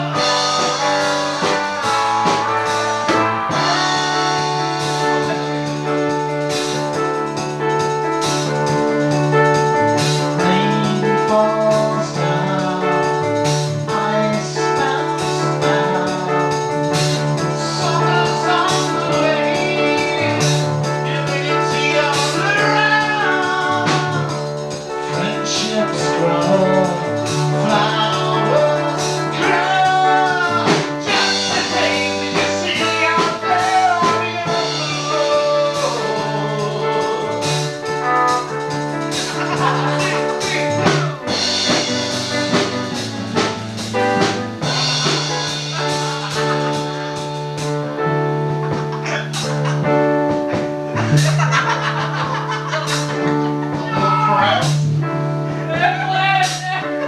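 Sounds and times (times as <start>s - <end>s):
person singing: 0.0s - 6.1s, 10.2s - 48.2s, 48.8s - 54.8s
keyboard chords: 0.0s - 57.0s
drum hits: 29.0s - 54.9s.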